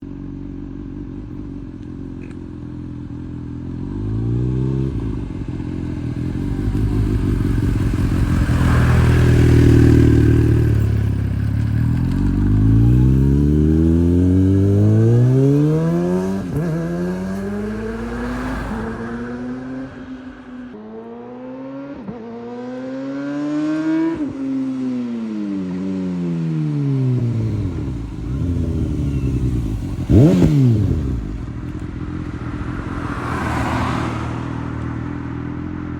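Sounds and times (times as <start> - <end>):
motorcycle engine revving: 0.0 - 35.9.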